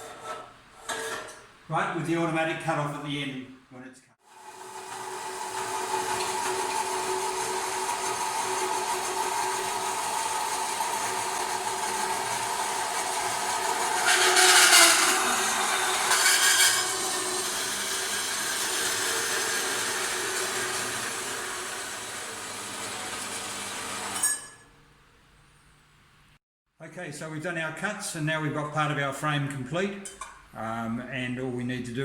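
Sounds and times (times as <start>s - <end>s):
bandsaw cutting metal: 4.5s - 24.5s.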